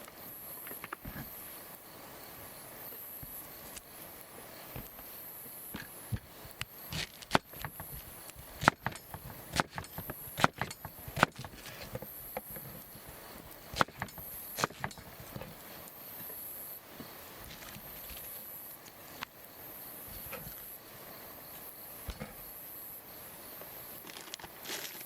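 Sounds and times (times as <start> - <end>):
insects buzzing: 0.0 - 25.0
wood knocking and snapping: 6.9 - 12.7, 13.7 - 15.6.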